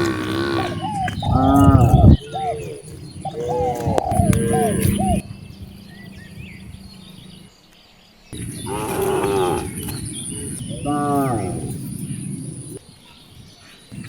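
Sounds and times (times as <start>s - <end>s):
cows mooing: 0.0s - 2.7s, 8.5s - 10.0s
faint bird chirps: 0.0s - 14.0s.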